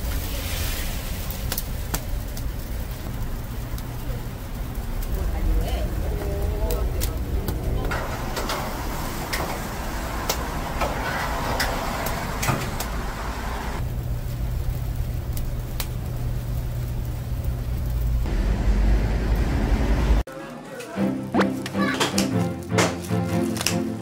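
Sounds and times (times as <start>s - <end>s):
low rumble of traffic: 0.0s - 20.3s
steady low hum: 12.9s - 20.2s.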